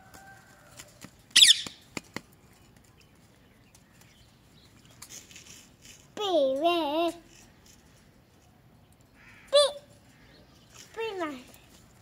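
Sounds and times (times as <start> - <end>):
parrot screeching: 1.4 - 1.6.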